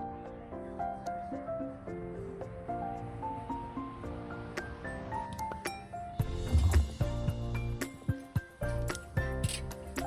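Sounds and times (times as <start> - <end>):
sustained instrumental music: 1.2 - 10.0.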